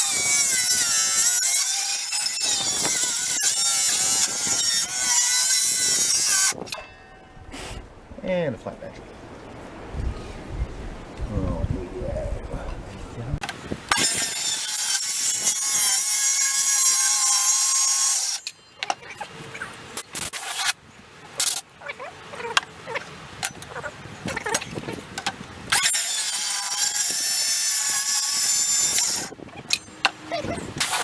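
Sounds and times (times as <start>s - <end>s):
cordless power saw cutting: 0.0s - 6.6s, 13.9s - 18.5s, 25.7s - 29.8s, 30.8s - 31.0s.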